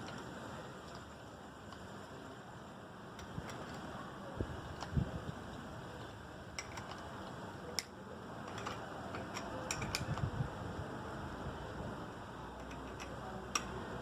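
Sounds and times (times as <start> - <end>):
small clicks of fitting wheel: 3.1 - 3.9, 6.5 - 10.4, 12.5 - 13.8.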